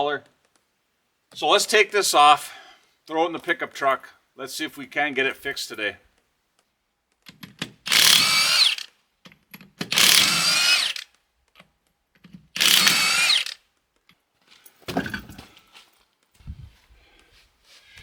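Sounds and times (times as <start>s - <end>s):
impact wrench bursts: 7.7s - 8.9s, 9.8s - 11.1s, 12.6s - 13.6s.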